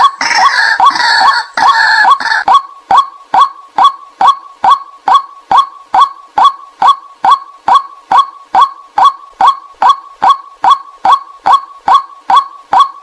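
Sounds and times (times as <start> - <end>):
waterhen kwak calls: 0.0 - 2.6.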